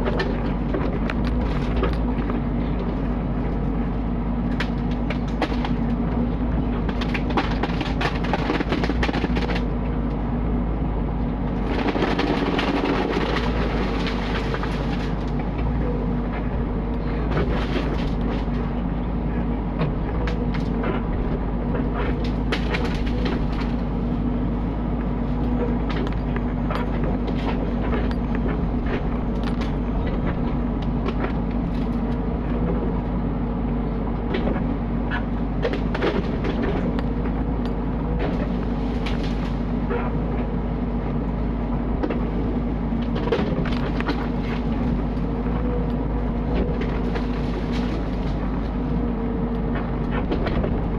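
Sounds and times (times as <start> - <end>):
diesel engine running under load: 0.0 - 50.9
knocks and cracks: 4.5 - 6.0, 6.8 - 9.7, 22.1 - 23.8.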